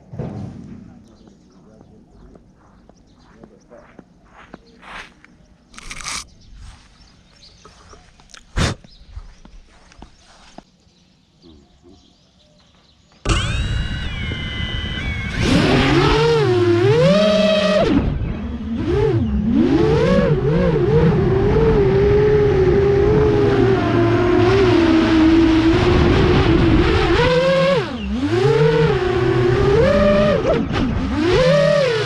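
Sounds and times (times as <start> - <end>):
quadcopter motors whining: 13.2 - 32.0.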